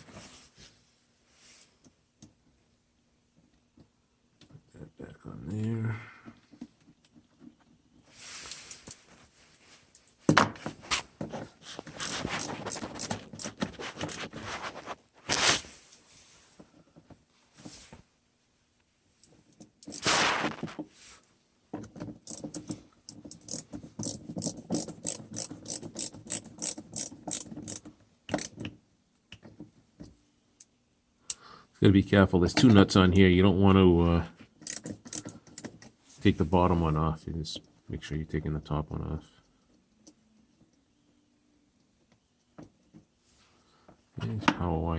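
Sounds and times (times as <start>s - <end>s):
ratchet wrench clicking: 22.2s - 22.7s, 23.3s - 28.5s, 34.6s - 35.7s.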